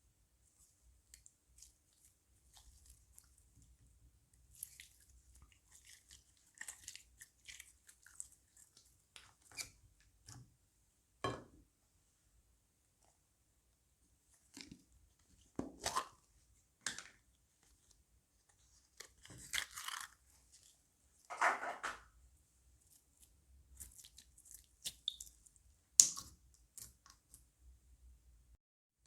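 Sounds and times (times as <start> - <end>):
crunchy slime crackling: 19.0 - 20.7.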